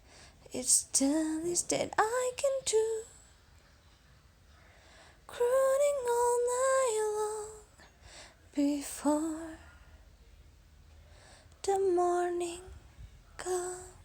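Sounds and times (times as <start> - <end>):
woman singing unaccompanied: 0.4 - 3.2, 5.3 - 7.9, 8.5 - 9.9, 11.6 - 14.0.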